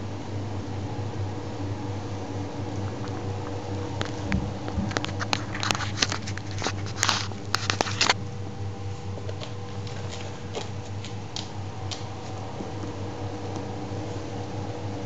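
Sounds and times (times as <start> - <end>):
cat purring: 2.6 - 7.0.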